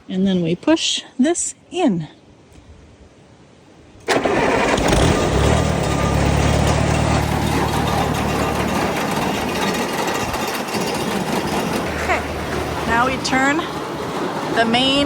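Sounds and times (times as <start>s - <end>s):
tractor engine starting and running: 4.0s - 15.0s.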